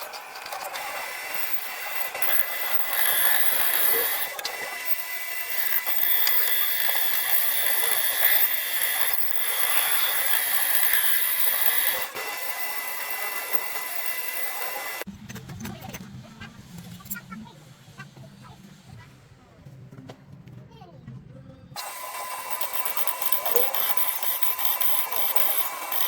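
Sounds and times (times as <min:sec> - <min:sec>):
power tool whining: 0:00.0 - 0:15.1, 0:21.8 - 0:26.0.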